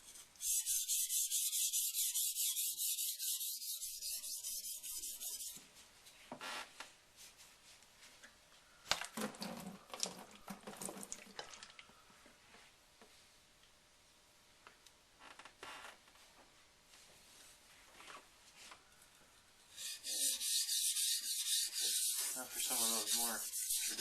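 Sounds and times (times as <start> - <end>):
knife grinding on a whetstone: 19.8 - 24.0.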